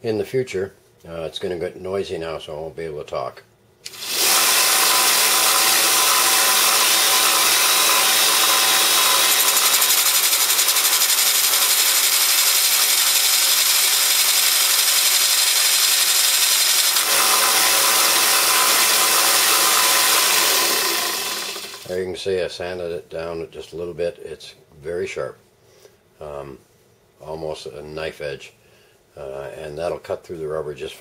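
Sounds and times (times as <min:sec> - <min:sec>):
belt sander grinding metal: 0:03.9 - 0:21.9.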